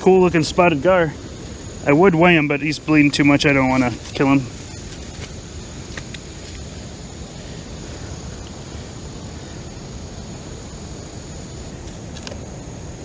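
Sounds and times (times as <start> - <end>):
low outdoor rumble: 0.0 - 13.0.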